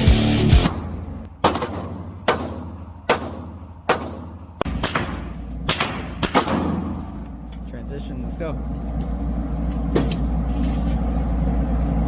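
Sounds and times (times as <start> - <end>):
rifle gunshots: 0.7 - 7.0.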